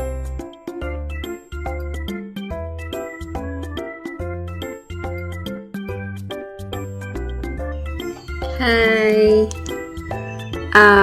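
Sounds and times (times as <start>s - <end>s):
tinkly background music: 7.2s - 11.0s
voice saying hi: 8.5s - 9.5s.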